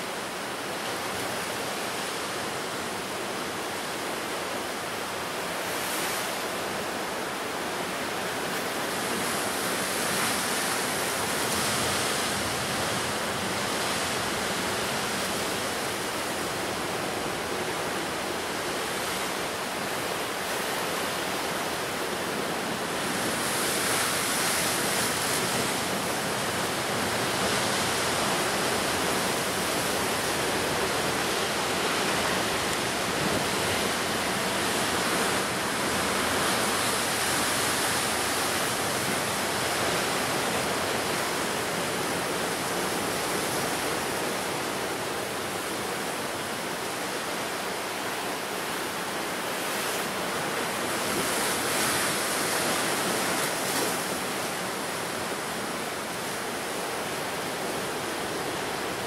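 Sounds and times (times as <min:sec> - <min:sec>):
ocean waves breaking: 0:07.6 - 0:59.0.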